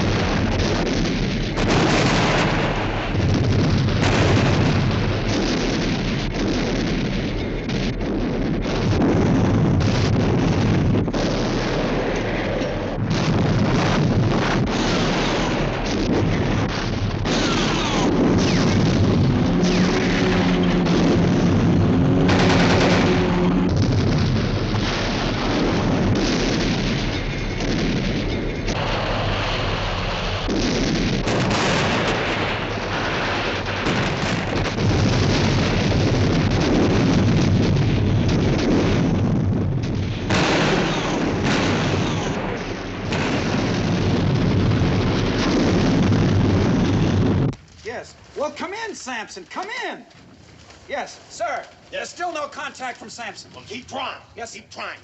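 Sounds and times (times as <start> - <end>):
rifle and machine-gun fire: 0.0 - 47.5
artillery explosions: 0.0 - 49.9.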